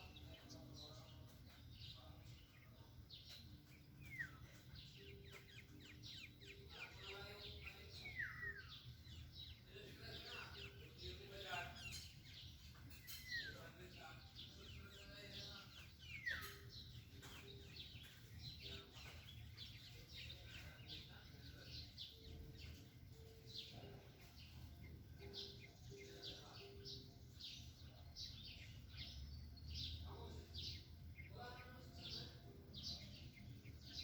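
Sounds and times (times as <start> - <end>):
small birds chirping: 0.0 - 34.0.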